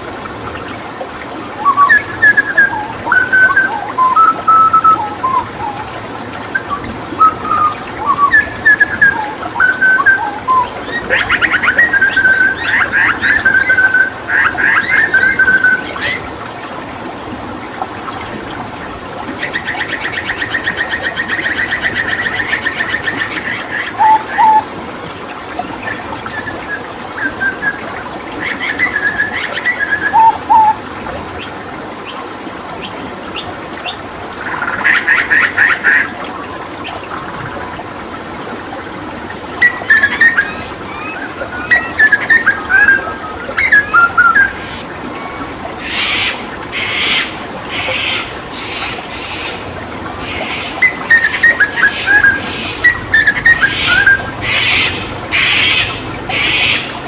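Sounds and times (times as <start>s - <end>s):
steady water sound: 0.0s - 57.0s
butcherbird singing: 39.6s - 44.6s, 50.3s - 56.9s.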